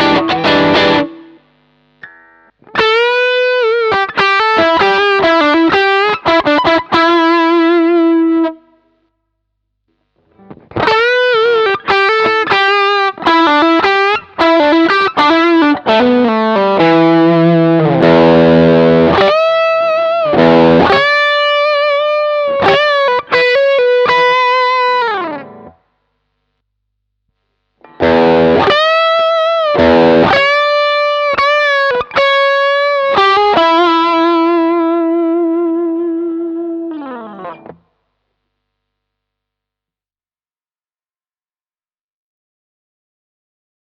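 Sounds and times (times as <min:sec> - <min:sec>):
overdriven electric guitar lead: 0:00.0 - 0:08.7, 0:10.2 - 0:25.8, 0:27.8 - 0:37.8.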